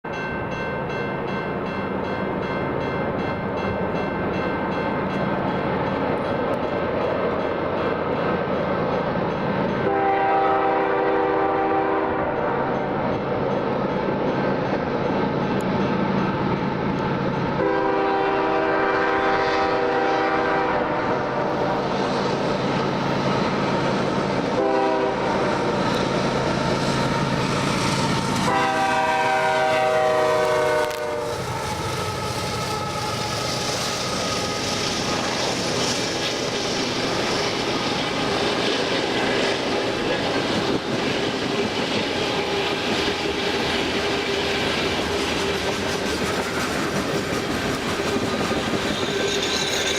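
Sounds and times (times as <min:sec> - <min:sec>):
freight train rolling by: 0:00.0 - 0:49.9
train horn blasts: 0:09.8 - 0:13.1, 0:17.5 - 0:21.8, 0:24.5 - 0:25.8, 0:28.3 - 0:35.5.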